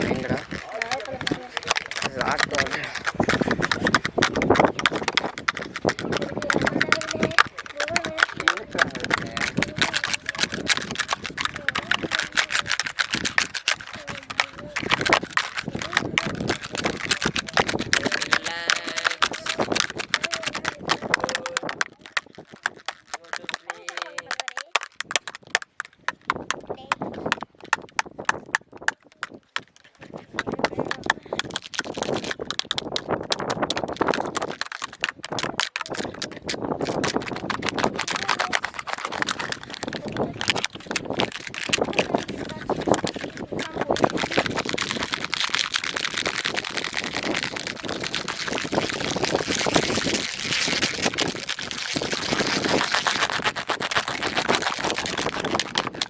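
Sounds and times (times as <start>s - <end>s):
rapid tapping on plastic mold: 0.0s - 56.0s.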